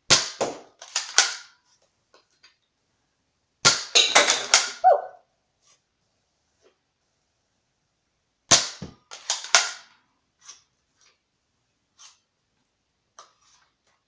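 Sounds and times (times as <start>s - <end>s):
toy dart pistol snaps and clacks: 0.1s - 1.6s, 8.5s - 10.0s.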